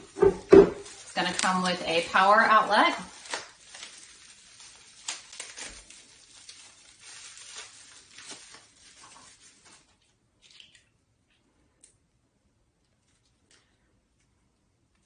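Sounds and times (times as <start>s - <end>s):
plastic packaging crinkling: 0.0s - 11.0s.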